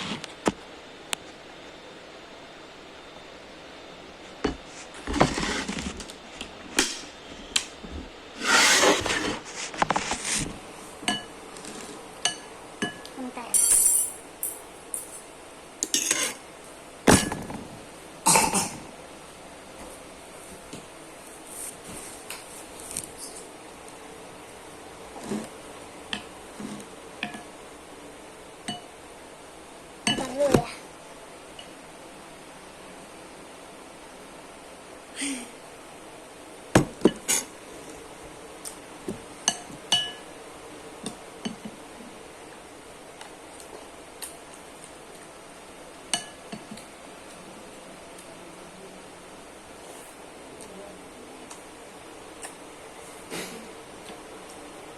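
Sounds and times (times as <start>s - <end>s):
cutlery clinking against dish: 13.6s - 15.2s.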